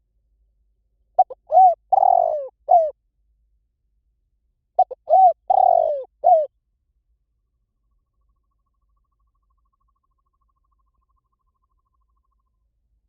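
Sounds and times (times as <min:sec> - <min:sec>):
dove cooing: 0:01.2 - 0:02.9, 0:04.8 - 0:06.5.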